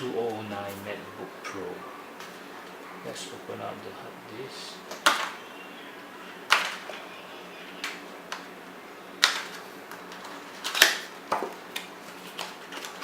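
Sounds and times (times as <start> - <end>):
cardboard and plastic packaging clicks: 9.2 - 13.0.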